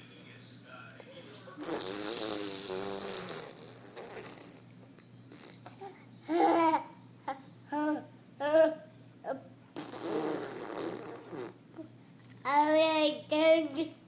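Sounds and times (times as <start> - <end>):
baby babbling: 5.8 - 9.4.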